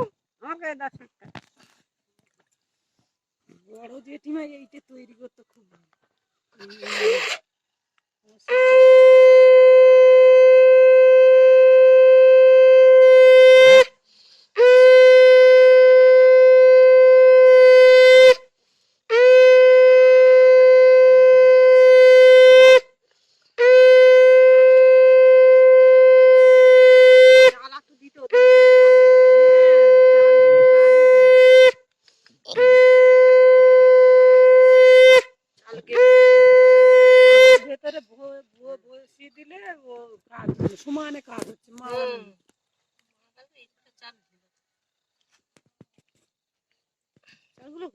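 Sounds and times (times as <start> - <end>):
conch shell blasts: 8.5 - 14.0, 14.6 - 18.5, 19.1 - 23.0, 23.6 - 27.6, 28.3 - 31.9, 32.5 - 37.7.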